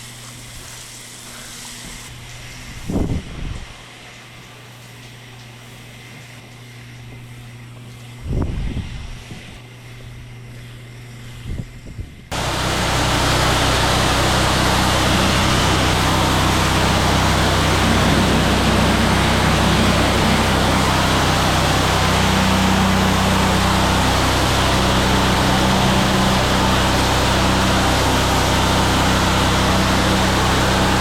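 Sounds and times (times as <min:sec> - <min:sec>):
high-pressure water spray hiss: 0:00.0 - 0:02.2, 0:12.3 - 0:31.0
pressure washer engine drone: 0:12.3 - 0:31.0.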